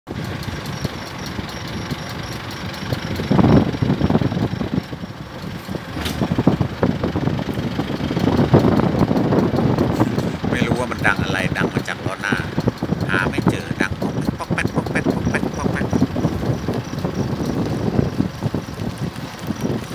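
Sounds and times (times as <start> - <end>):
car running: 0.0 - 19.9
clunks and knocks from wheel: 5.4 - 6.7.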